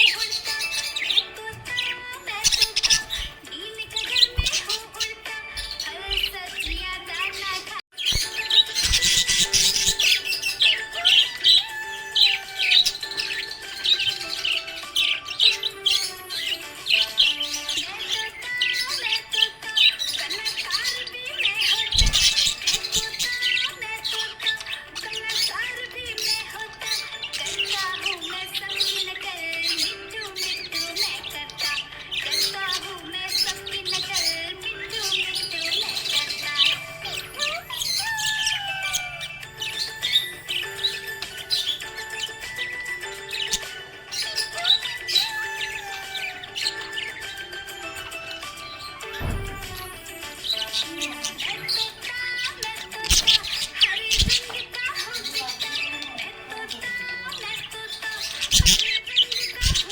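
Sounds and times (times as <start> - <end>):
background music with held notes: 0.0 - 59.9
budgerigar chirping: 0.0 - 59.9.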